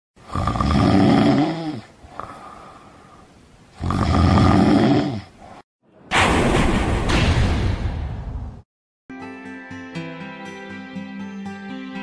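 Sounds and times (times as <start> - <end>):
person snoring: 0.2 - 3.2, 3.8 - 5.4.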